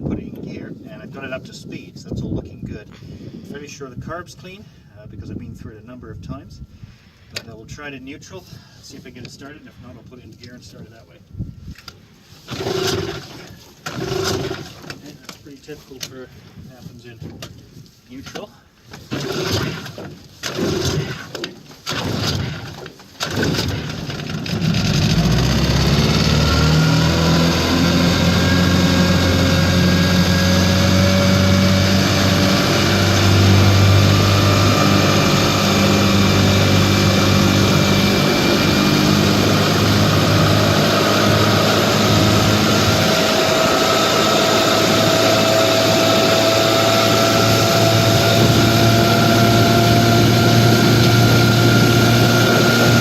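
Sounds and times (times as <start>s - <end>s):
outboard motor starting and running: 12.2s - 15.4s, 18.8s - 53.0s.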